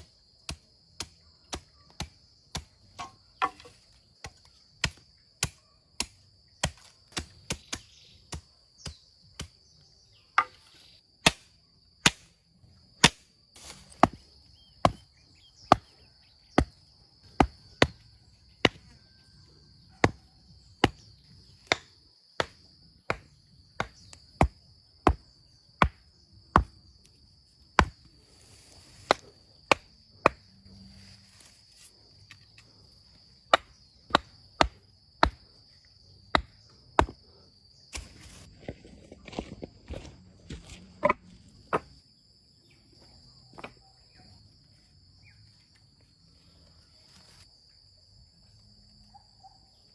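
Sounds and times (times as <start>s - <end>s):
insect drone: 0.0s - 49.9s
hand tool chopping: 25.8s - 26.8s, 27.8s - 28.1s, 33.5s - 35.4s, 36.3s - 37.2s.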